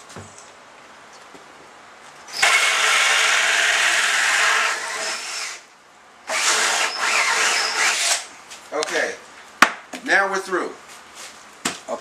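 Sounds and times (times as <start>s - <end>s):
power drill cutting wood: 2.3s - 5.6s, 6.3s - 8.3s.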